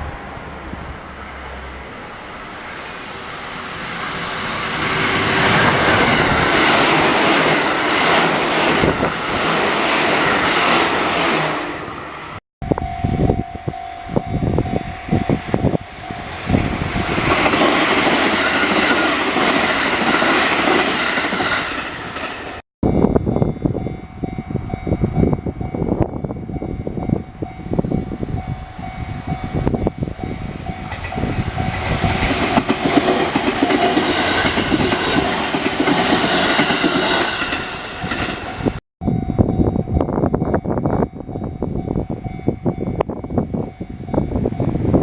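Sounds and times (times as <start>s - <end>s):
train rushing rumble: 0.0s - 45.0s
steady tone: 11.7s - 19.4s
train wheels clacking over rail joints: 30.9s - 38.6s.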